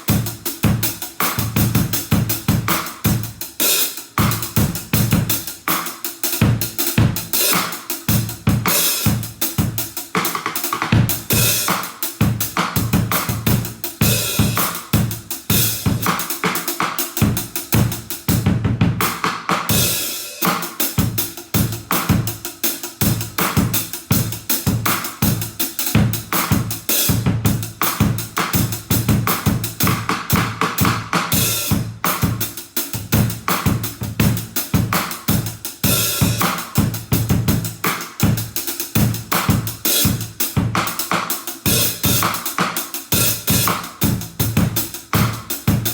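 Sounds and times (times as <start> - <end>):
snare drum: 0.0 - 45.9
cymbals: 11.2 - 12.0, 12.8 - 17.9, 19.7 - 22.3, 33.2 - 40.2, 40.8 - 45.9.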